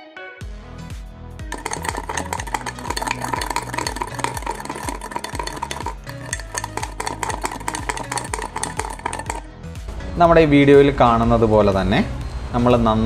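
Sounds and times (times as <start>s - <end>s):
background music: 0.0s - 13.0s
metal spoon clicking against cup: 1.5s - 9.4s.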